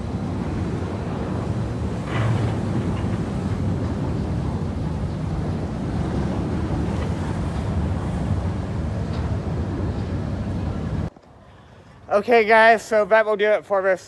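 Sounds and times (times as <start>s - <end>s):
wind buffeting microphone: 0.0s - 11.1s.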